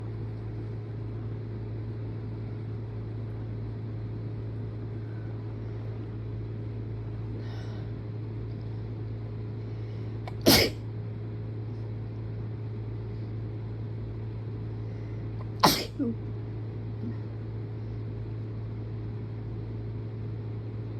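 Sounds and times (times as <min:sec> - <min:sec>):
steady low hum: 0:00.0 - 0:20.9
person sneezing: 0:10.3 - 0:10.8, 0:15.6 - 0:16.2.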